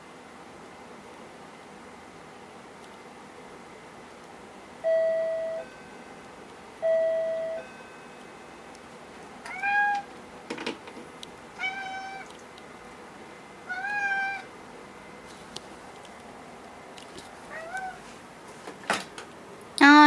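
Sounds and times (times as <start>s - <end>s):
two-note electronic door chime: 4.8s - 6.2s, 6.8s - 8.6s
cat meowing: 9.5s - 10.1s, 11.6s - 12.3s, 13.7s - 14.5s, 17.5s - 18.0s.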